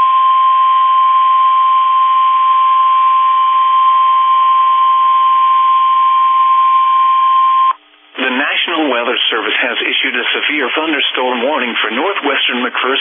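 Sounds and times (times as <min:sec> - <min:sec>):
radio hiss: 0:08.2 - 0:13.0.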